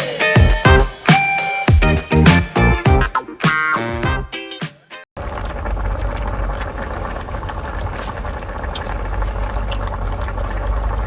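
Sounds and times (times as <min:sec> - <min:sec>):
music: 0:00.0 - 0:05.1.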